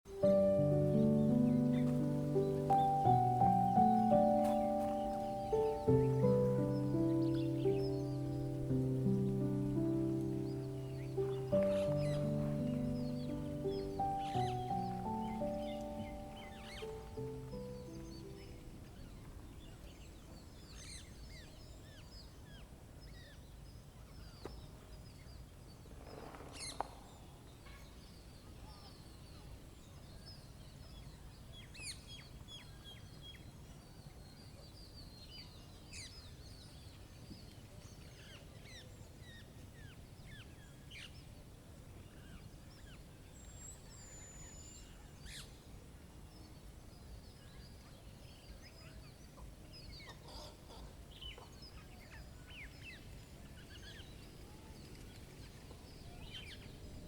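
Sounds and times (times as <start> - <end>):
low wind rumble: 0.1 - 20.4
birds chirping: 0.1 - 21.5.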